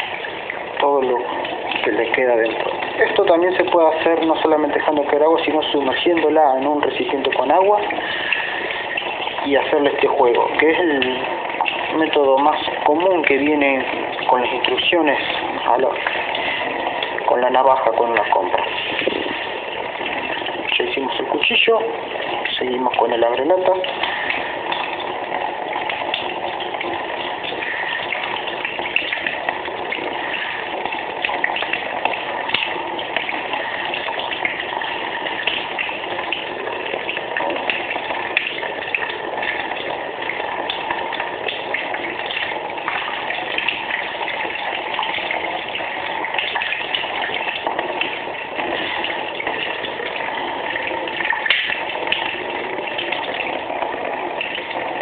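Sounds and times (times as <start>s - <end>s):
tap water running and splashing: 0.0s - 55.0s.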